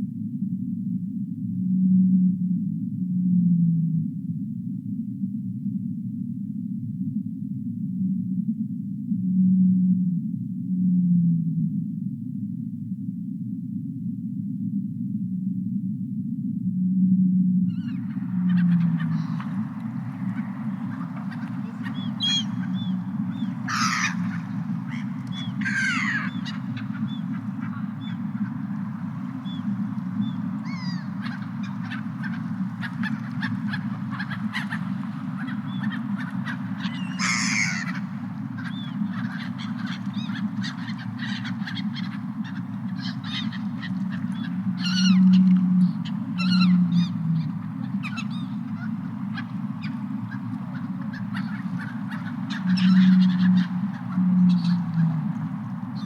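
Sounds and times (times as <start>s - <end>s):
seagulls calling: 17.7s - 56.0s.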